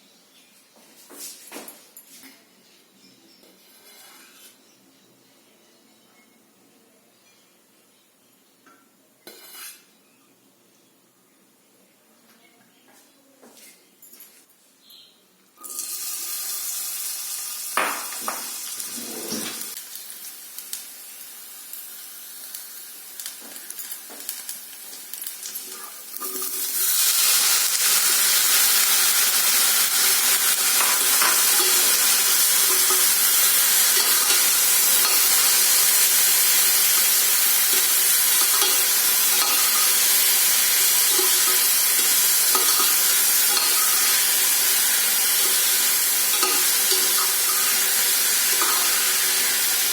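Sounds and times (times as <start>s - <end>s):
bread sizzling in oil: 15.6s - 49.9s.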